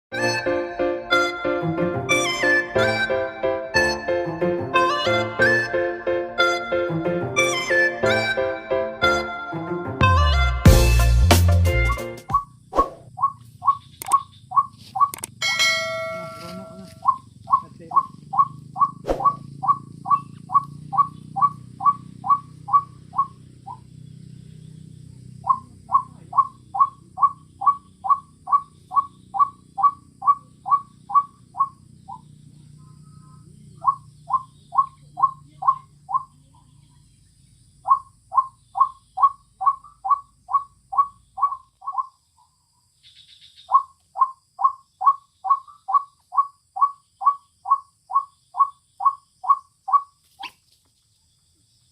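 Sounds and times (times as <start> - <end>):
waterhen calling: 15.8 - 23.8, 25.4 - 32.2, 37.9 - 42.1.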